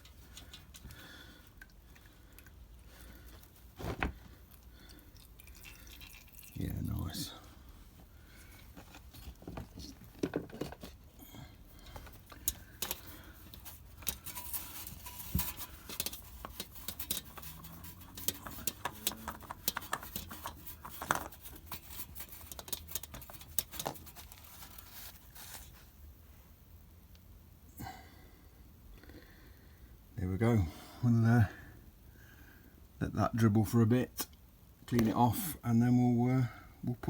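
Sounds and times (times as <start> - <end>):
oil dribbling: 4.5 - 7.2.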